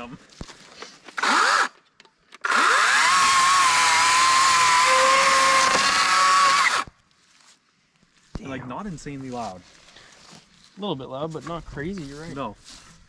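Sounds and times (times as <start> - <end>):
electric chainsaw running: 1.2 - 1.8, 2.4 - 6.9.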